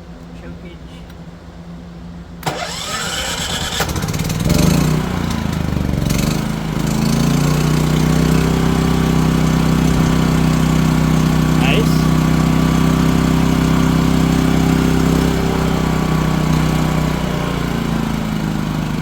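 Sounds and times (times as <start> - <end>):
generator engine cranking and running: 2.4 - 11.5.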